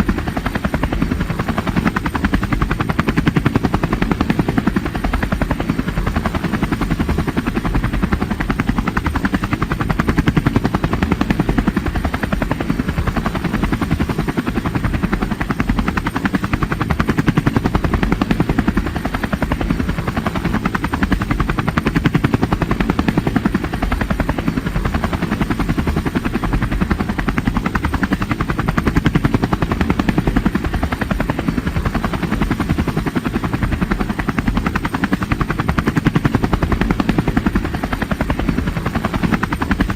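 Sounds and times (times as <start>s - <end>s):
helicopter rotor beating: 0.0s - 39.9s.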